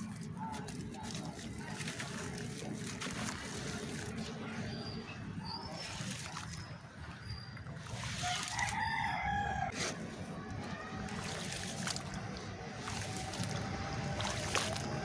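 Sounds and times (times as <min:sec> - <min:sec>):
water sloshing: 0:00.0 - 0:15.0
rooster crowing: 0:08.2 - 0:09.7.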